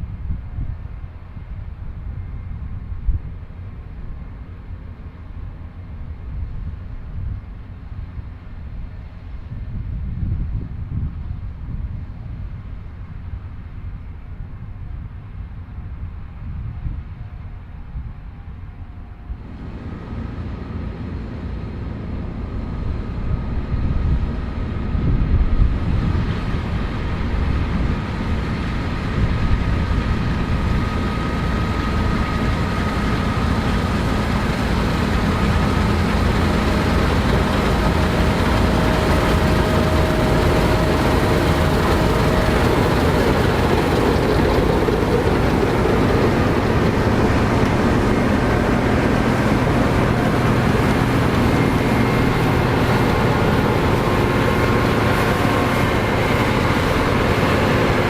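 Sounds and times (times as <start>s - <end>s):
faint machine whine: 17.0s - 58.0s
combine harvester running: 19.3s - 58.0s.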